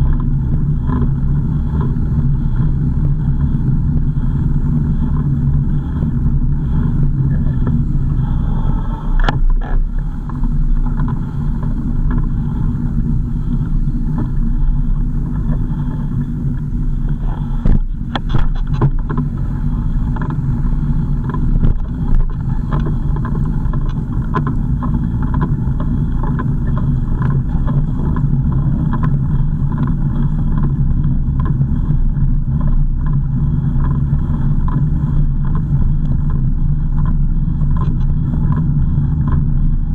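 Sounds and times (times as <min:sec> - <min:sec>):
car engine and road hum: 0:00.0 - 0:39.9.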